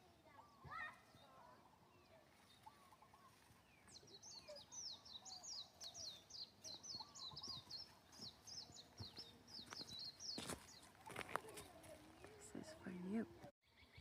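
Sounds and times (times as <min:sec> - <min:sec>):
bird song with rapid slurred notes: 0:00.0 - 0:14.0
soft lower bird chirps: 0:00.0 - 0:14.0.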